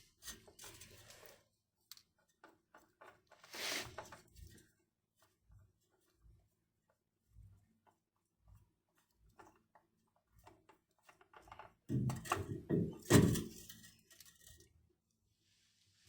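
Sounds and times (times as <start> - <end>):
knocks clatter and rustling: 10.3 - 14.7.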